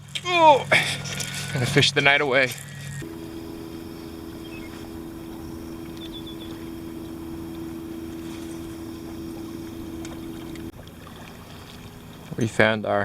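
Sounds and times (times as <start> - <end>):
outboard motor running: 2.8 - 13.0
hull rushing through water: 3.0 - 12.8.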